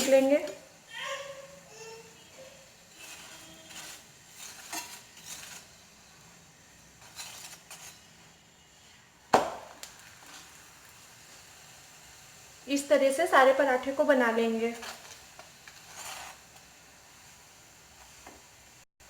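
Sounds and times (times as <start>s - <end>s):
spatula scraping a griddle: 2.0s - 8.8s, 14.6s - 18.4s.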